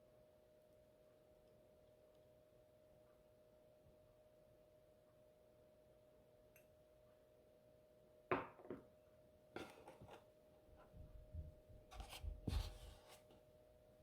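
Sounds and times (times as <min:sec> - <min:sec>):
faint steady hum: 0:00.0 - 0:14.0
things being handled: 0:09.6 - 0:10.3.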